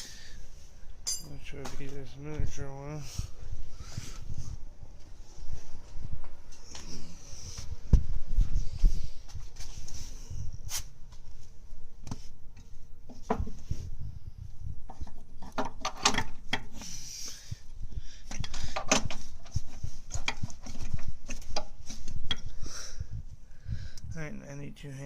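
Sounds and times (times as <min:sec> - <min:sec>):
metal parts knocking and clinking: 0:01.0 - 0:01.5.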